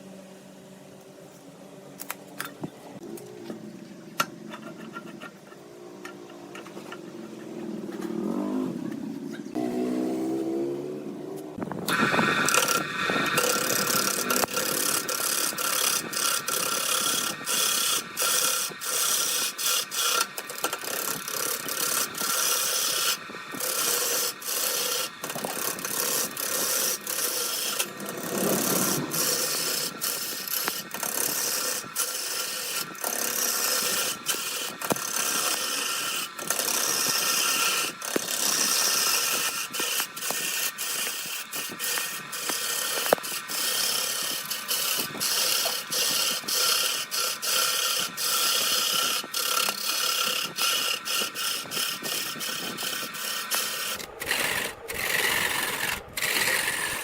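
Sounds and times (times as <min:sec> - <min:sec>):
turning tool scraping wood: 0:04.2 - 0:09.6, 0:11.7 - 0:57.0
wood lathe whine: 0:11.8 - 0:57.0.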